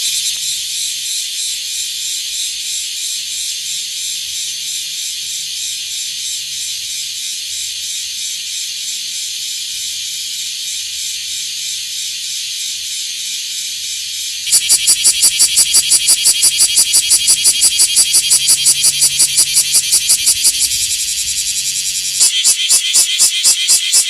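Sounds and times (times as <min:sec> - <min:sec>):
cicada buzzing: 0:14.4 - 0:24.0.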